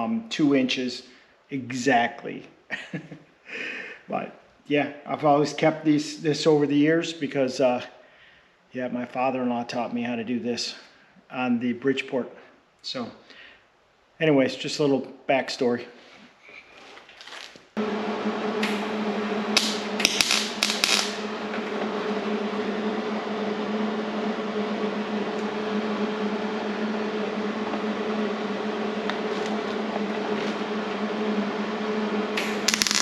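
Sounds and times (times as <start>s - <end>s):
machine humming: 17.8s - 33.0s
harsh hissing bursts: 32.4s - 33.0s.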